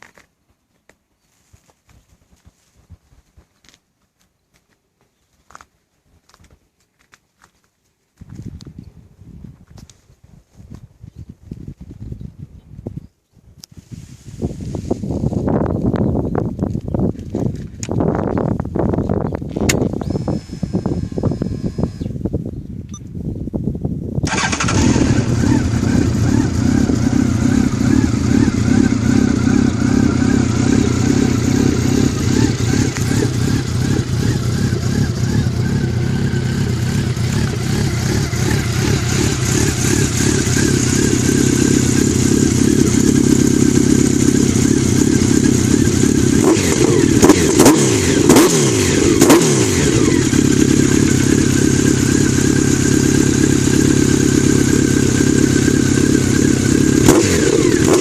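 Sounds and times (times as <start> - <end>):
motorcycle throttle blips: 18.9 - 23.1, 24.2 - 58.0
motorcycle engine idling: 24.3 - 58.0.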